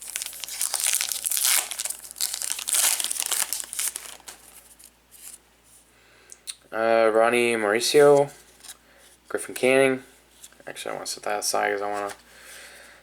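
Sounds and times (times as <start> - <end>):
foil wrapper crinkling: 0.0 - 4.9.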